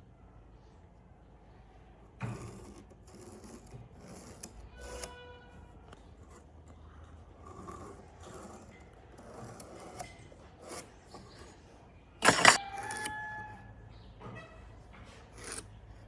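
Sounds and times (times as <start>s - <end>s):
hand tool scraping wood: 7.4s - 13.2s, 14.9s - 15.8s
brief squeak: 12.2s - 14.7s.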